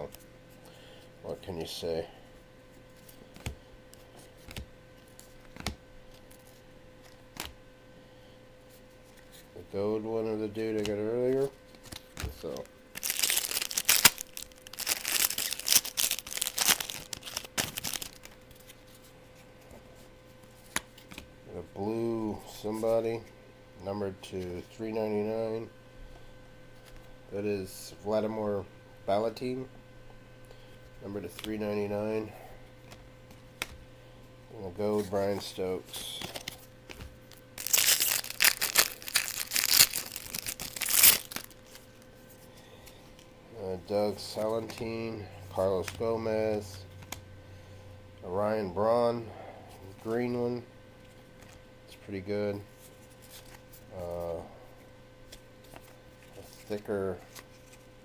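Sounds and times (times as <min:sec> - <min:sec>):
foil wrapper crinkling and tearing: 0:11.8 - 0:18.8, 0:36.1 - 0:42.0.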